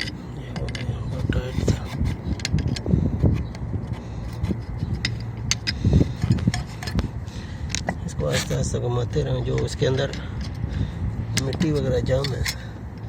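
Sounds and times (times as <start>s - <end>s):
pliers clicking and scraping on metal: 0.0s - 7.1s, 11.3s - 13.0s
steady low hum: 0.0s - 13.0s.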